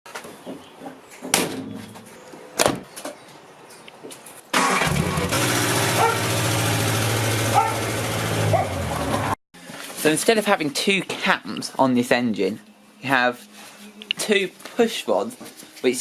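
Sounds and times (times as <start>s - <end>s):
car engine running: 4.8s - 9.4s.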